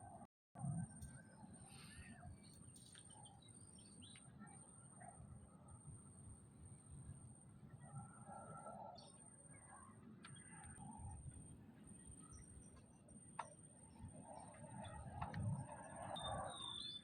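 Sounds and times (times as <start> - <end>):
thin steady high whine: 0.0 - 17.0
bird chirps: 1.7 - 5.1, 15.6 - 17.0.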